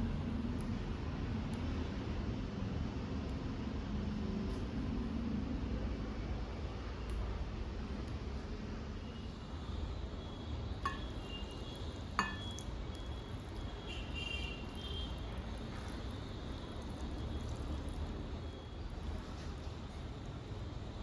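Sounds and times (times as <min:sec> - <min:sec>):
kitchenware clinking: 0:10.9 - 0:11.2, 0:12.2 - 0:12.6.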